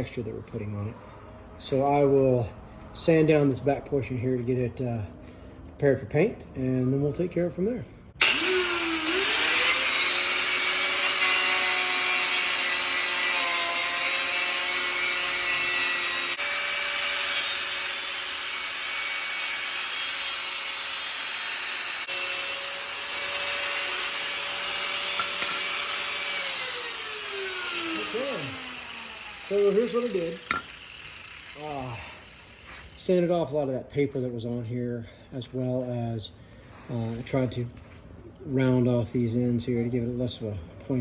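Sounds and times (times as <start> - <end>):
power sander on metal: 8.2 - 33.0.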